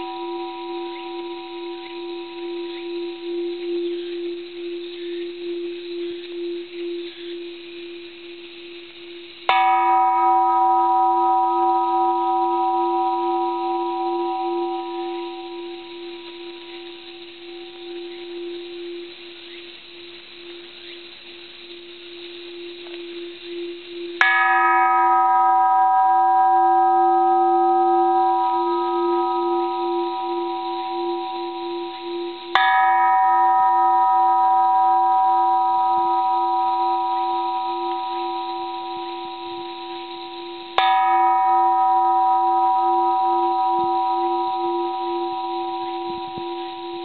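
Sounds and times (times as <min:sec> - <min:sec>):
temple bell ringing: 0:00.0 - 0:47.0.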